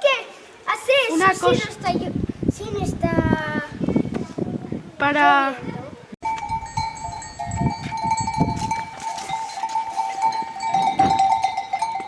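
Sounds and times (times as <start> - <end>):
sheep bells clinking: 6.2 - 12.0.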